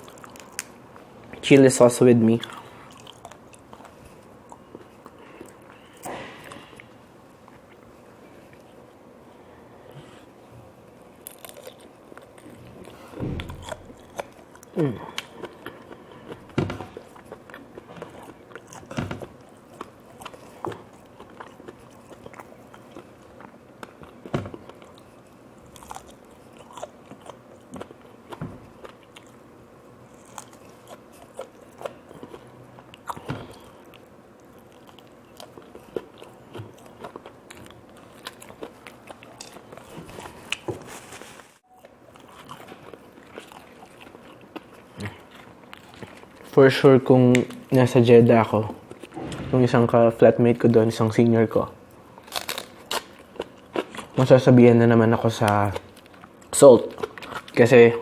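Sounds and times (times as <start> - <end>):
person chewing crunchy food: 0.0 - 1.4, 2.3 - 49.4, 51.8 - 58.0.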